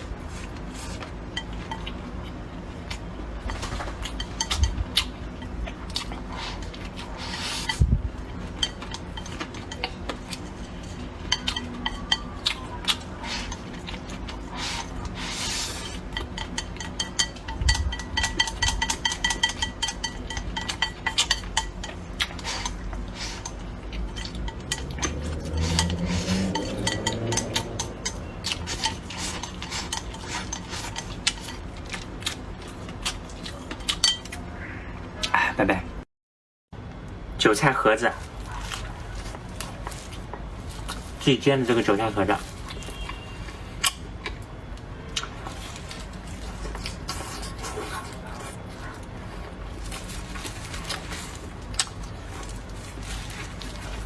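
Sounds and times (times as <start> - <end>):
tableware clinking: 15.9 - 32.1.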